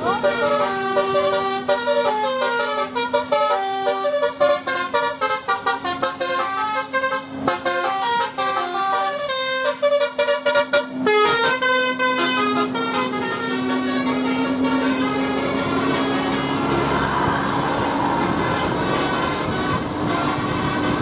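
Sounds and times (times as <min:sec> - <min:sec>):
multi-tone bus horn melody: 0:00.0 - 0:21.0
low drone: 0:15.6 - 0:19.9.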